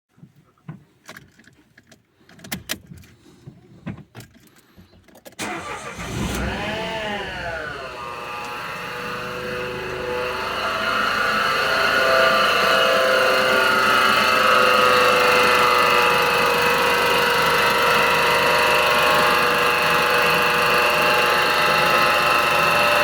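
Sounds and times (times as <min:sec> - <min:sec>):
car engine starting and idling: 0:05.4 - 0:23.0.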